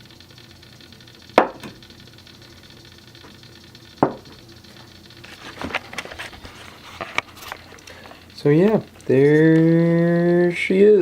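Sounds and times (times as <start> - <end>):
sharp knocks: 1.4 - 1.7, 4.0 - 4.4.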